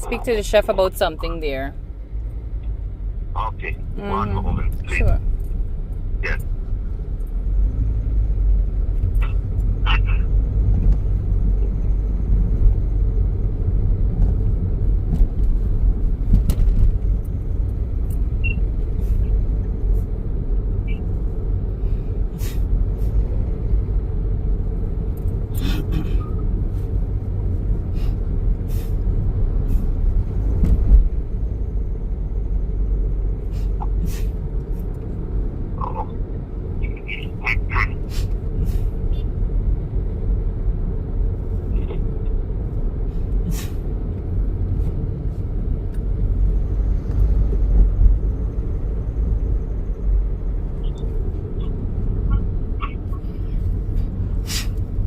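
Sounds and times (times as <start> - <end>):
low rumble over phone line: 0.0 - 55.0.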